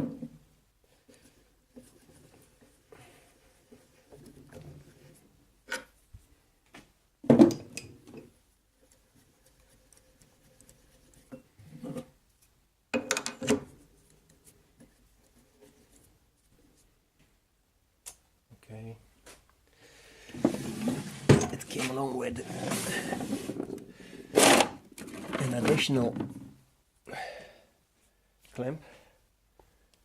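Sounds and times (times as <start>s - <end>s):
rubbing and rustling: 0.8s - 5.4s, 8.4s - 12.6s, 13.6s - 17.0s, 20.3s - 26.6s.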